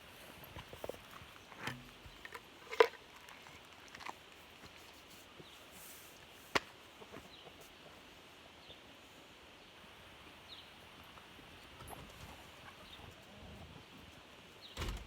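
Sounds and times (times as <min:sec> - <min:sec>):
chickens pecking ground: 0:00.0 - 0:08.2.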